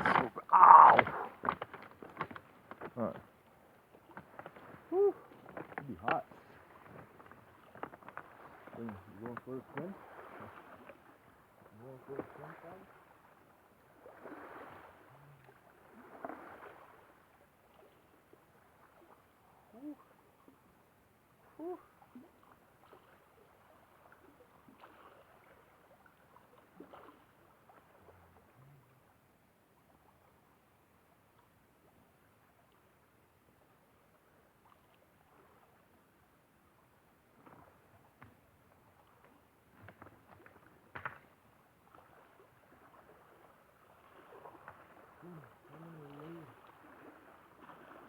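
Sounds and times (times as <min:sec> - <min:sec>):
soft splashes: 0:00.0 - 0:20.5, 0:21.4 - 0:29.1, 0:33.6 - 0:48.0
small waves lapping at shore: 0:00.0 - 0:48.0
low voice: 0:04.9 - 0:05.2, 0:08.8 - 0:09.8, 0:11.7 - 0:12.9, 0:21.6 - 0:21.8, 0:45.2 - 0:46.6.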